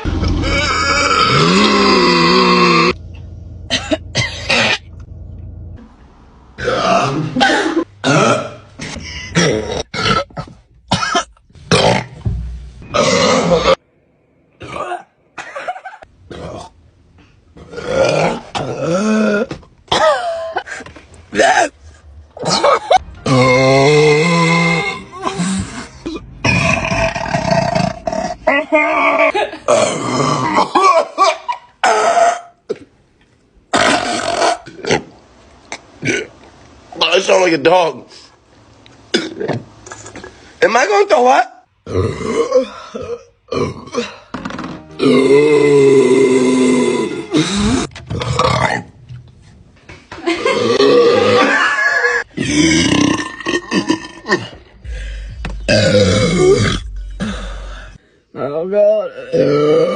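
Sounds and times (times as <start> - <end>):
person burping: 0.0 - 3.0, 6.6 - 12.1, 12.9 - 13.8, 14.6 - 15.2, 17.7 - 20.7, 22.4 - 31.1, 33.7 - 35.1, 39.1 - 39.6, 41.8 - 44.4, 45.0 - 48.9, 50.3 - 58.0, 59.1 - 59.9.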